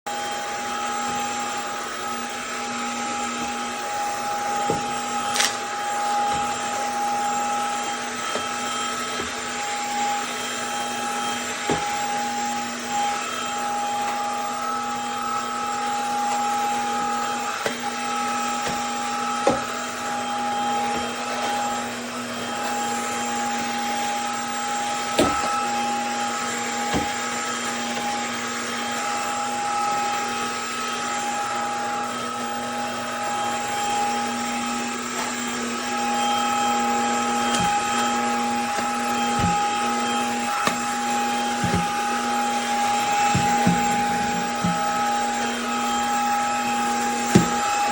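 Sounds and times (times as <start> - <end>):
vacuum cleaner motor whine: 0.1 - 47.9.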